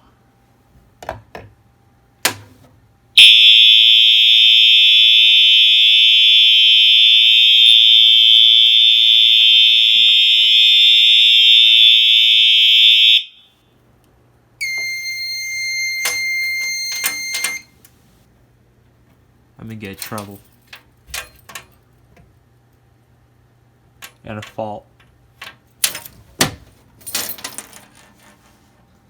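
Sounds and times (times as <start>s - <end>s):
fire alarm horn: 3.2s - 13.6s, 14.6s - 17.8s
high electronic beep tone: 14.6s - 17.6s.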